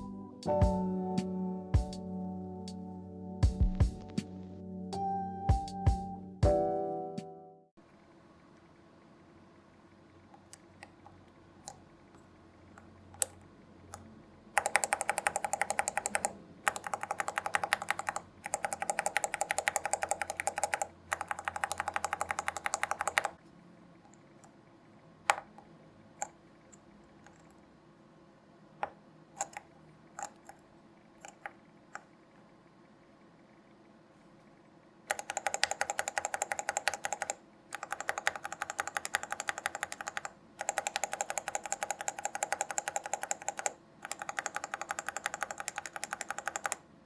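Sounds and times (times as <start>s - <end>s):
mechanical keyboard typing: 14.6s - 23.4s, 28.8s - 30.6s, 31.2s - 32.1s, 35.1s - 46.8s.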